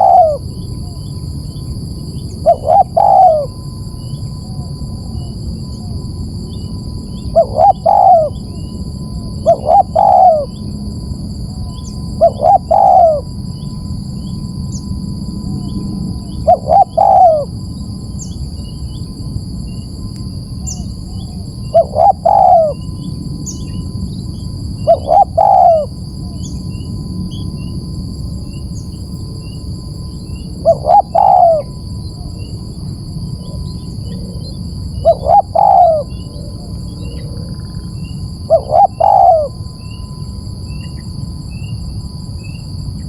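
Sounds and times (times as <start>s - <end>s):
dove cooing: 0.0s - 1.0s, 2.2s - 3.7s, 6.9s - 10.8s, 11.5s - 13.4s, 15.5s - 17.6s, 20.6s - 23.9s, 24.8s - 26.6s, 30.4s - 32.5s, 33.3s - 39.6s
steady high-pitched tones: 0.0s - 43.0s.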